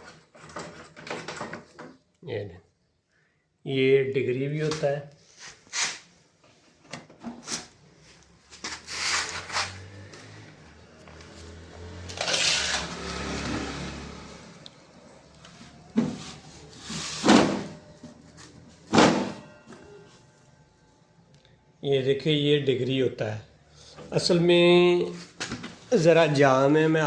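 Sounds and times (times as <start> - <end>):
metal clanking and scraping: 0.0 - 1.9, 12.1 - 13.2.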